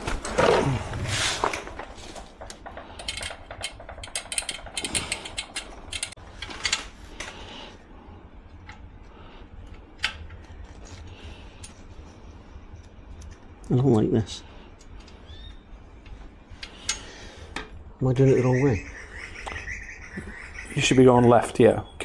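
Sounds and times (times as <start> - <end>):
hand tools clicking on metal: 2.4 - 6.8.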